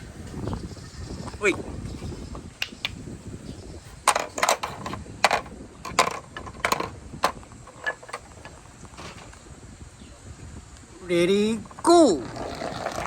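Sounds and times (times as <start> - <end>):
marble run balls clacking: 4.1 - 8.6.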